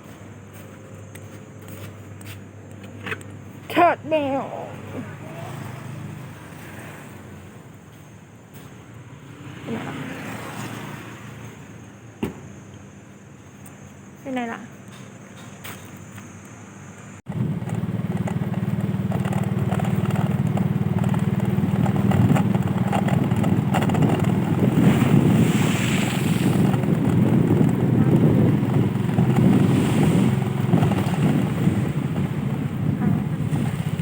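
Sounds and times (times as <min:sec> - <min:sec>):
vehicle engine running: 0:17.3 - 0:34.0
wind on microphone: 0:17.3 - 0:34.0.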